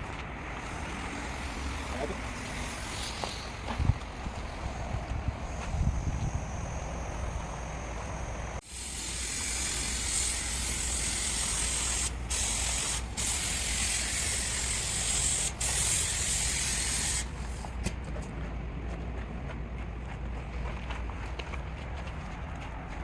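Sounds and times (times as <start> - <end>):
spray paint hissing: 0.4 - 17.8.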